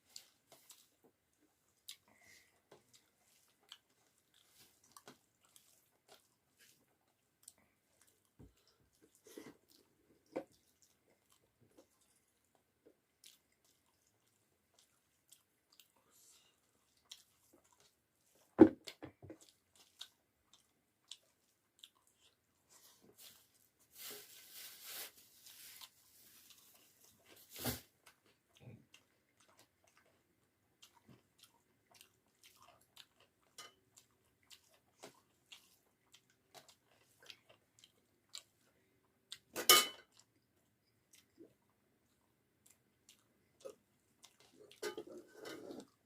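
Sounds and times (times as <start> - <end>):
chewing mouth sounds: 1.7 - 23.5, 28.0 - 39.5, 40.1 - 46.0
soft rustle: 22.6 - 27.9.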